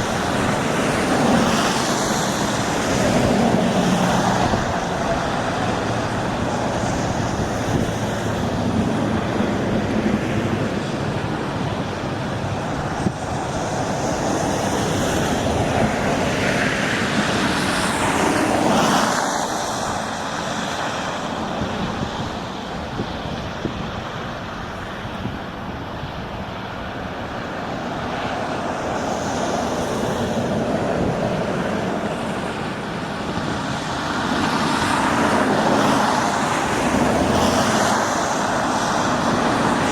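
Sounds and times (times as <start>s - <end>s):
traffic: 0.0s - 39.9s
wind: 0.0s - 39.9s.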